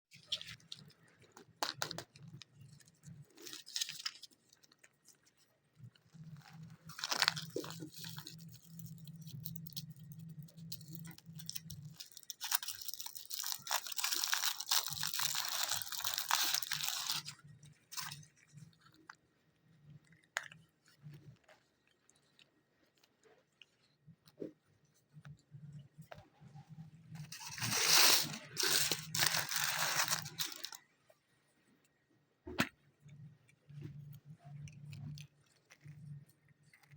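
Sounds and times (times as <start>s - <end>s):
wrappers crinkling: 0.2s - 18.5s, 27.2s - 30.8s.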